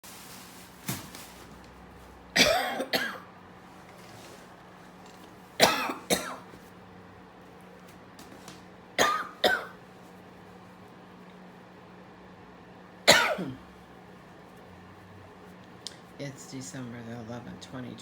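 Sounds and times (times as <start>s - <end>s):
person coughing: 2.4s - 3.3s, 5.6s - 6.5s, 9.0s - 9.8s, 13.1s - 13.7s.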